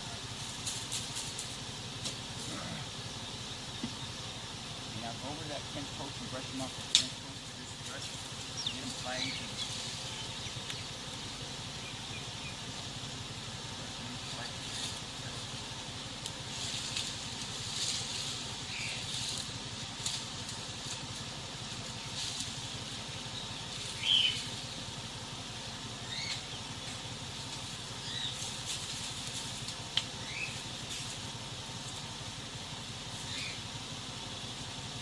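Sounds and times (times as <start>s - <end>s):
bee swarm humming: 0.0s - 35.0s
bird chirps: 8.4s - 11.0s, 11.7s - 12.7s, 23.3s - 24.8s, 26.0s - 26.8s, 30.2s - 30.6s, 33.2s - 33.6s.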